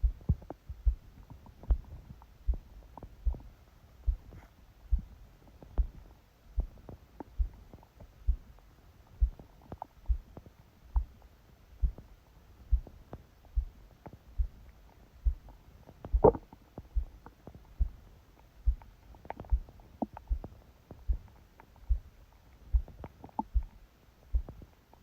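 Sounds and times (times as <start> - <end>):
stomach gurgle: 0.0 - 4.5, 15.5 - 18.1, 18.7 - 21.8, 22.4 - 23.8
heartbeat thumping: 0.0 - 13.8, 14.4 - 24.7.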